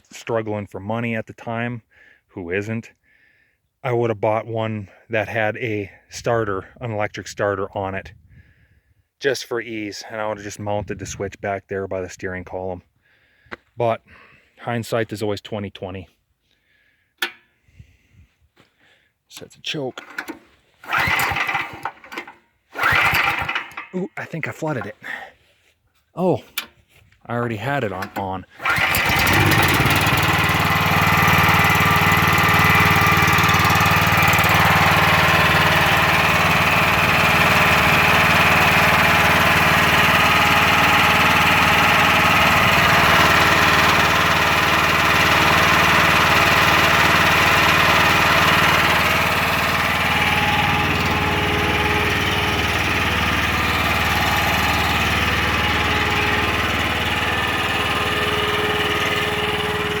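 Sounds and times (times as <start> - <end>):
small gasoline engine running: 20.1 - 24.0, 28.0 - 60.0.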